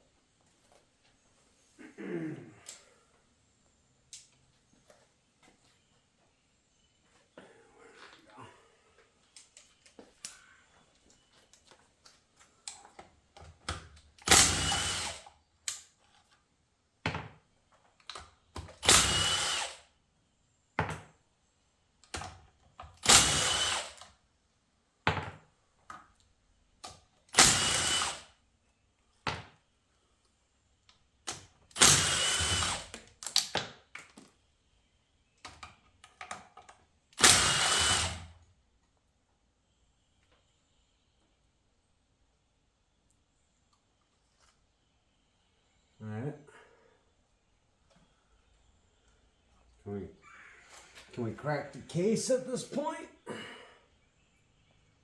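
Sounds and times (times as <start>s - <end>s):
power tool spinning bolts: 14.2s - 15.3s, 18.6s - 19.9s, 22.9s - 24.1s, 27.3s - 28.3s, 31.7s - 33.4s, 37.2s - 38.3s.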